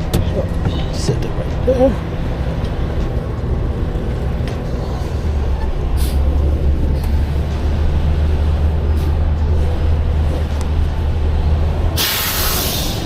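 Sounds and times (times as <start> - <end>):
vehicle engine idling: 0.0 - 13.0
short hisses: 12.0 - 13.0.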